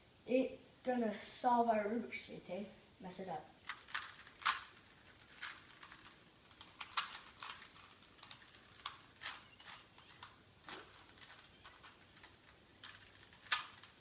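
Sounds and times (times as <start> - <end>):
plastic puzzle cube clicking: 3.7 - 14.0.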